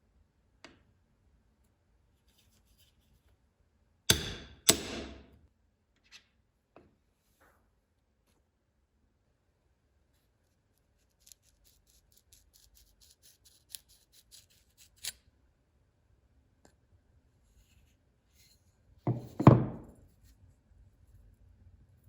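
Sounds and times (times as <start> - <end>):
heavy knocks on workbench: 19.1 - 19.9.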